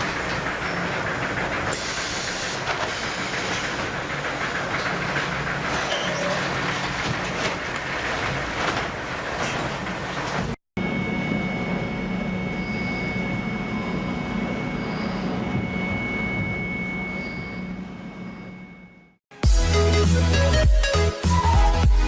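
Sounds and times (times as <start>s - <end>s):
heavy machinery rumble and clatter: 0.0s - 10.6s
thin high whine: 10.8s - 19.2s.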